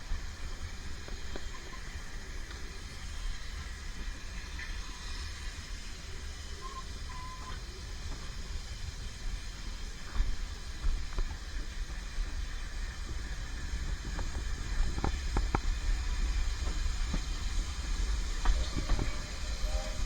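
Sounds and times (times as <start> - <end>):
steam hiss: 0.0 - 20.0
steam train rumble: 0.0 - 20.0
faint squeal: 6.6 - 7.6, 18.5 - 20.0.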